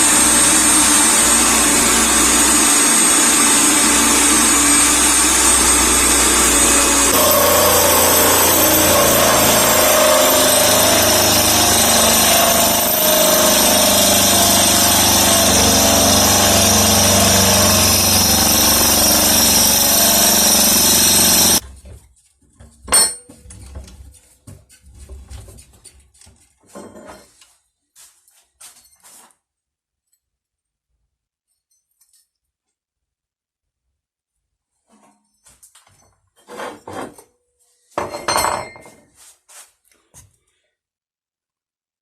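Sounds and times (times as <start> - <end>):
electric drill running: 0.0 - 21.6.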